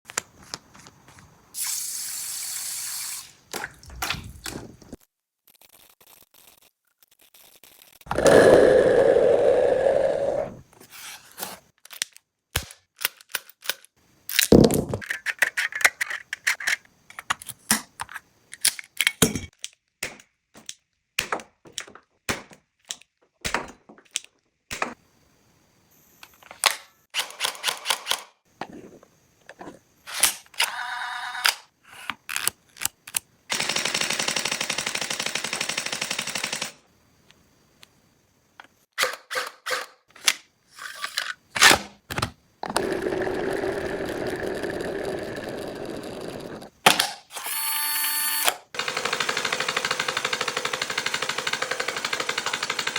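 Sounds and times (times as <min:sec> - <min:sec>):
toy gun clicks and clacks: 0:27.2 - 0:28.4, 0:39.0 - 0:40.0
toy gun rapid firing: 0:33.5 - 0:36.8, 0:48.4 - 0:52.9.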